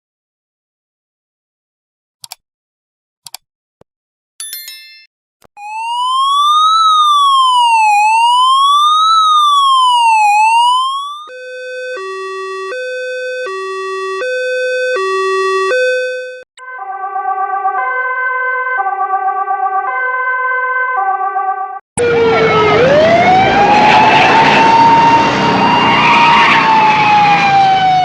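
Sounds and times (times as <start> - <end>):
ambulance siren: 5.6 - 28.0.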